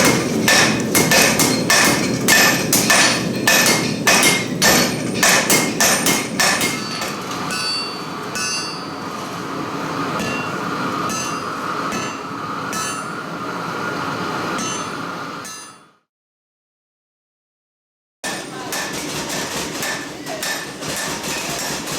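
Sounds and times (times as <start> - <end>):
hammer striking metal on anvil: 0.0 - 9.1, 10.2 - 13.2, 14.6 - 16.0, 18.2 - 21.9.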